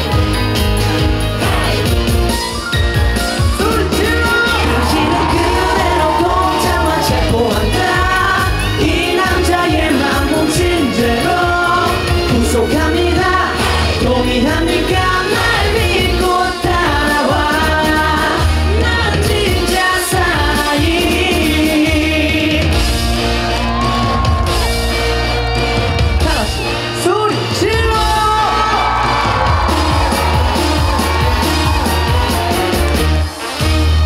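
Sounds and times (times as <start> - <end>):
dance-pop music with singing: 0.0 - 34.0
crowd shouting: 3.7 - 10.4, 28.1 - 33.6.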